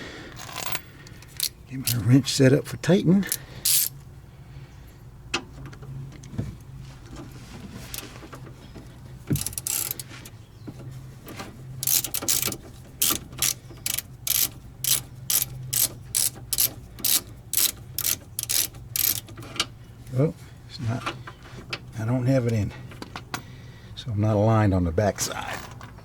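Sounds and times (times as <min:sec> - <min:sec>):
ratchet wrench clicking: 0:00.4 - 0:02.1, 0:03.2 - 0:04.0, 0:09.3 - 0:10.1, 0:11.8 - 0:19.5.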